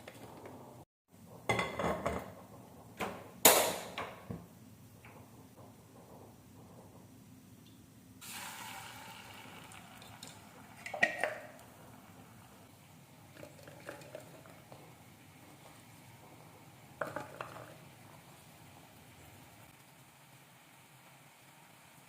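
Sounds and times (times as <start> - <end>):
dishes and utensils clattering: 1.5 - 2.4, 17.0 - 17.8.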